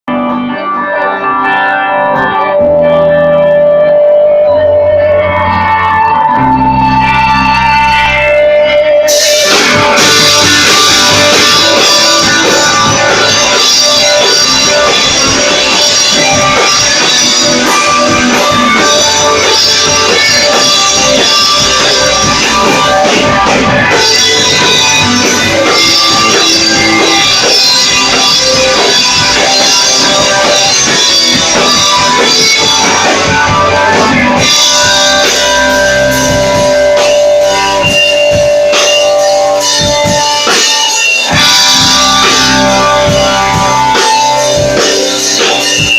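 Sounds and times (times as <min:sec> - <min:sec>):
live rock band playing: 0:00.0 - 0:45.9.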